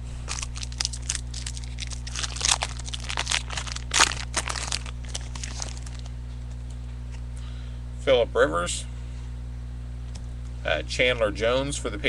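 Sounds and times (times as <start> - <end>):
foil wrappers crinkling: 0.2 - 6.1.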